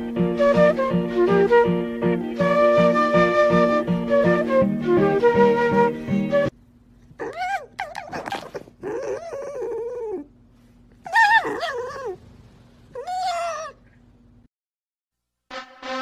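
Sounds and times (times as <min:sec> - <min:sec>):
dog whining: 0:07.1 - 0:10.4, 0:11.0 - 0:12.3, 0:12.9 - 0:14.0.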